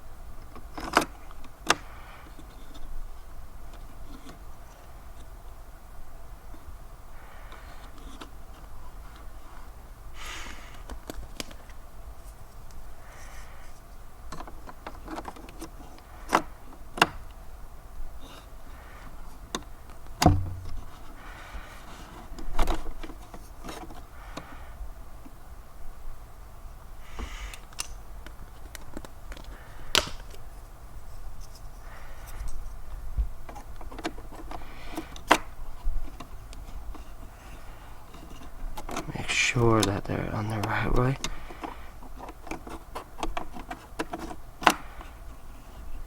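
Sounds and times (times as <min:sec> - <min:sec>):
soft rustles: 0:06.4 - 0:16.9, 0:28.3 - 0:46.0.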